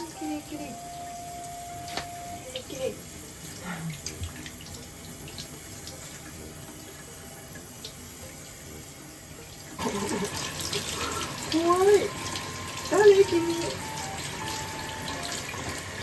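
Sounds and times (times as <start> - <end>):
tap water running into sink: 0.0 - 16.0.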